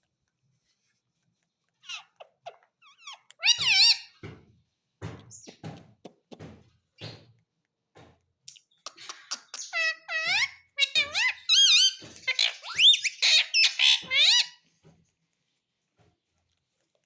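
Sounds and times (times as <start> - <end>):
parakeet chirping and calling: 1.8 - 4.2, 8.6 - 14.6.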